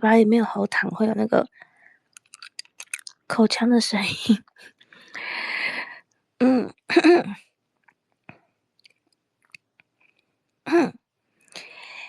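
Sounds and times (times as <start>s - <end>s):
woman's voice close to microphone: 0.0s - 1.5s, 3.3s - 4.6s, 6.4s - 7.4s, 10.7s - 10.9s
mouth clicks: 2.1s - 3.2s.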